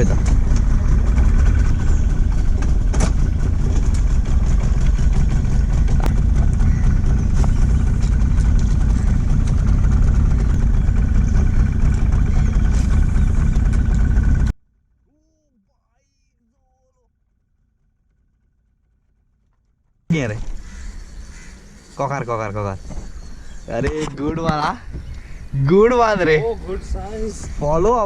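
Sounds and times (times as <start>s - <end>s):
motorboat engine droning: 0.0s - 14.5s, 20.1s - 28.0s.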